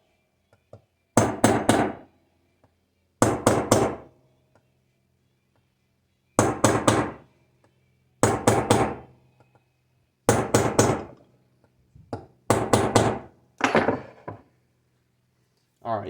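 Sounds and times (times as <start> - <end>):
hammer striking metal tool: 12.8 - 14.4.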